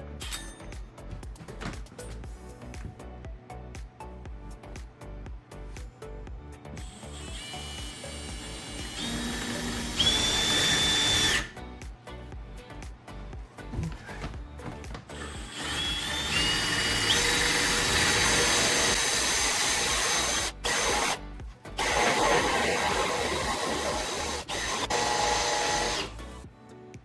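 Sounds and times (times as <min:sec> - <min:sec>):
power drill boring through wood: 0:06.8 - 0:11.5, 0:15.2 - 0:21.2, 0:21.8 - 0:26.3.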